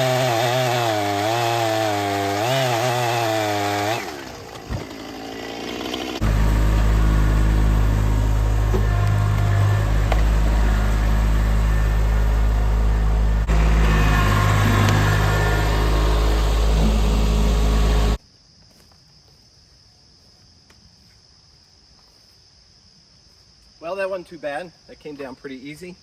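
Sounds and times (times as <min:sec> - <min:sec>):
engine running steadily: 0:05.7 - 0:18.2
crickets chirping: 0:18.2 - 0:26.0.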